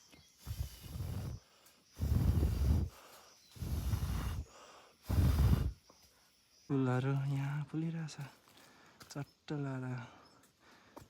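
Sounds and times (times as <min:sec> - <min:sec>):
heavy breathing: 0:00.4 - 0:05.8.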